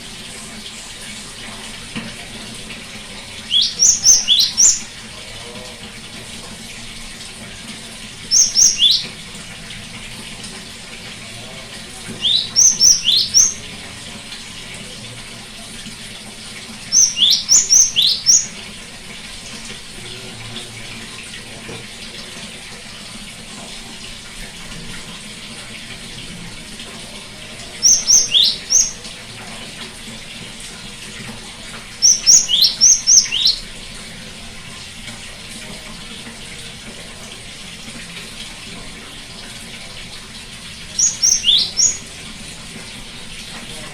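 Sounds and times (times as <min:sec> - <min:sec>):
great tit singing: 0:03.4 - 0:05.0, 0:08.3 - 0:09.2, 0:12.1 - 0:13.7, 0:16.9 - 0:18.6, 0:27.8 - 0:29.1, 0:32.0 - 0:33.6, 0:40.9 - 0:42.1.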